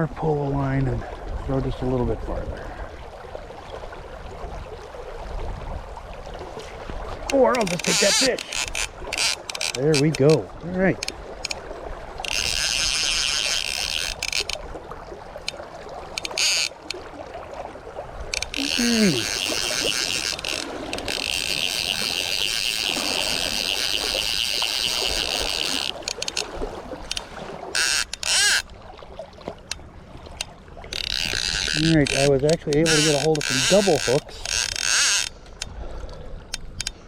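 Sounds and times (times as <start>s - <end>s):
fishing reel screaming: 7.4s - 10.3s, 12.2s - 14.6s, 16.2s - 17.0s, 18.4s - 28.7s, 30.9s - 35.4s.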